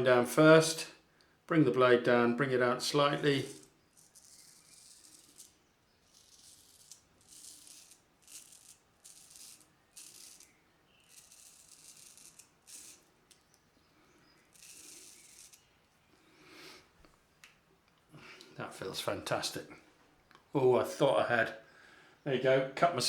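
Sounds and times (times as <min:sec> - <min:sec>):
razor scraping stubble: 0:02.8 - 0:13.6, 0:14.3 - 0:15.8.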